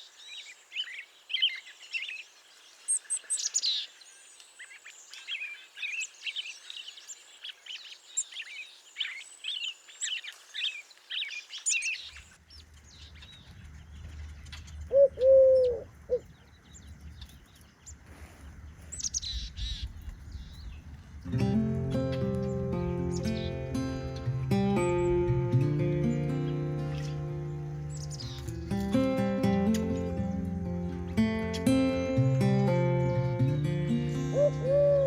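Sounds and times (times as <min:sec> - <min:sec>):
birds chirping: 0:00.0 - 0:35.0
lower bird call: 0:13.0 - 0:35.0
low rumble: 0:18.6 - 0:25.7
acoustic guitar music: 0:21.2 - 0:35.0.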